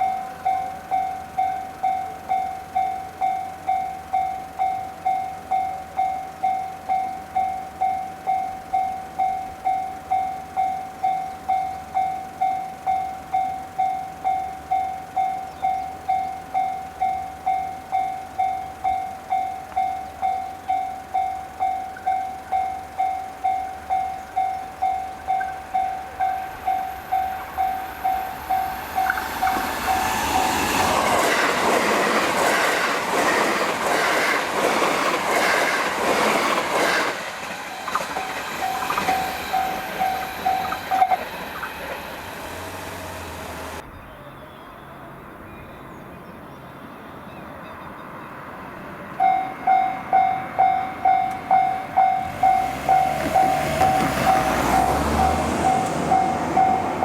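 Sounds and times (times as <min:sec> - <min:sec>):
level crossing bell ringing: 0:00.0 - 0:30.8, 0:37.8 - 0:41.3, 0:49.2 - 0:57.0
train wheels clattering over rail joints: 0:17.1 - 0:43.8, 0:49.7 - 0:57.0.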